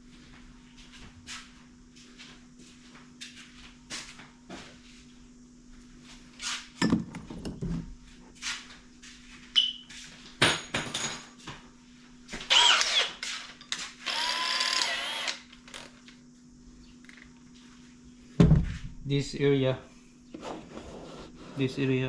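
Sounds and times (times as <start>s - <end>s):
power drill running: 12.5s - 13.2s, 14.0s - 16.0s.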